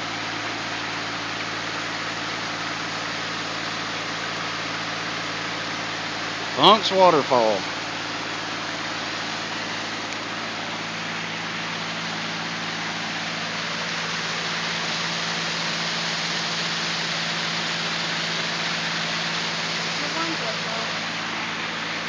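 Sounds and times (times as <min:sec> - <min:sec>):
waterfall rushing: 0:05.6 - 0:22.0.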